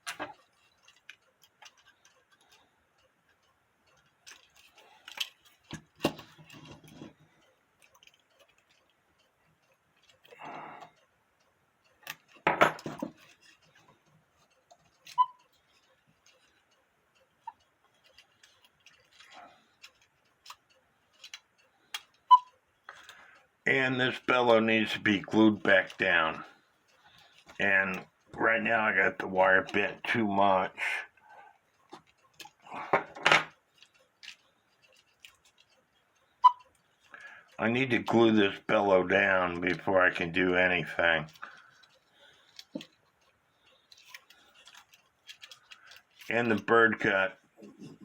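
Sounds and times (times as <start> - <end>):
small tools clicking and tapping: 0.0 - 47.1
handling knocks and rustles: 3.3 - 8.9, 12.0 - 16.8.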